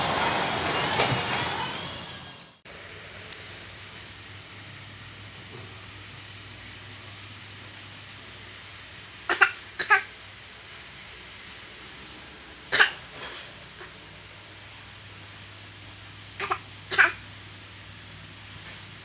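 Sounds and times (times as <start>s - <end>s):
baby coughing: 9.3s - 10.1s, 12.7s - 14.0s, 16.4s - 17.2s.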